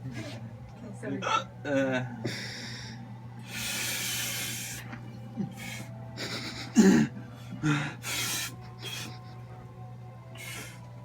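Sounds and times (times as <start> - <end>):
person breathing hard: 2.2 - 4.9, 5.5 - 9.3, 10.4 - 10.9.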